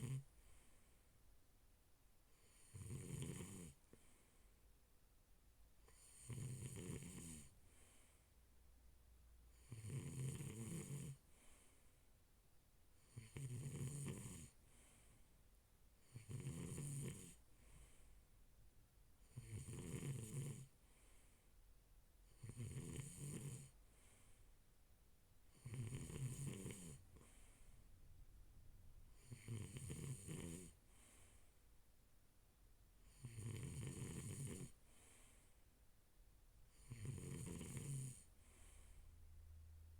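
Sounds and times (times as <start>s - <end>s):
person snoring: 0.0s - 0.2s, 2.4s - 3.8s, 5.9s - 7.5s, 9.6s - 11.2s, 13.1s - 14.6s, 16.1s - 17.4s, 19.3s - 20.7s, 22.4s - 23.7s, 25.5s - 27.4s, 29.2s - 30.8s, 33.1s - 34.8s, 36.7s - 39.0s.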